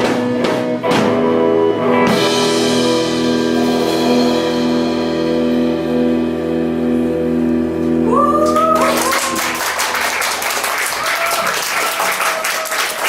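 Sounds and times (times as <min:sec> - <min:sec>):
rock band final chord: 0:00.1 - 0:10.9
audience whooping: 0:08.0 - 0:13.0
audience applause: 0:08.1 - 0:13.0.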